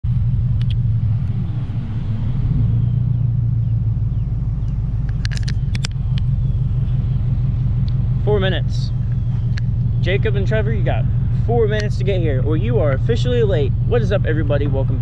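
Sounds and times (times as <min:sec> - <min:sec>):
car engine low rumble: 0:00.0 - 0:15.0
sharp clicks: 0:00.6 - 0:01.4, 0:04.6 - 0:06.3, 0:09.0 - 0:10.0.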